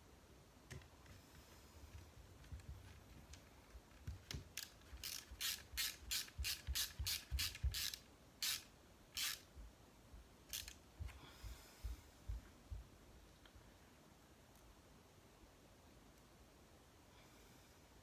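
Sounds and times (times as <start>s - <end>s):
screwdriver turning screw into plastic: 4.0s - 9.5s, 10.5s - 10.8s.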